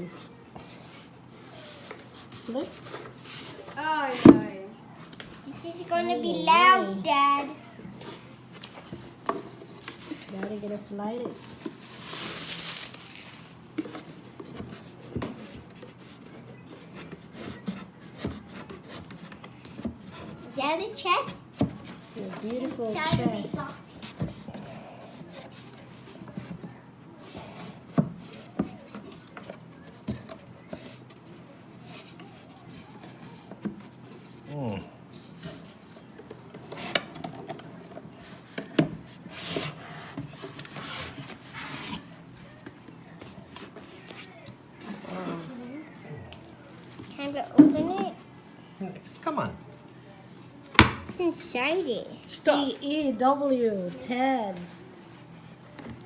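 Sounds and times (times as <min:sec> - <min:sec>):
wood scraping against wood: 0:35.1 - 0:45.6
wooden chest scraping cardboard: 0:38.4 - 0:42.2.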